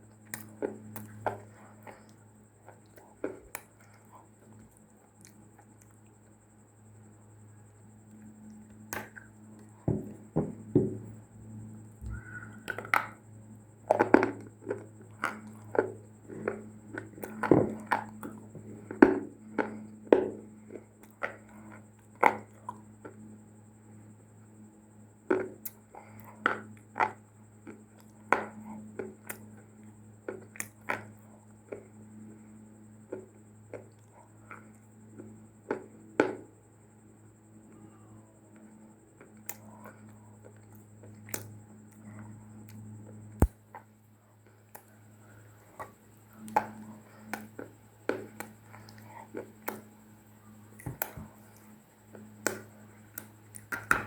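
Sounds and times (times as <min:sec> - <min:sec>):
clay being chewed crunching: 0:00.0 - 0:06.4, 0:13.8 - 0:23.2, 0:25.3 - 0:31.9, 0:38.5 - 0:54.0
steady low hum: 0:00.0 - 0:54.0.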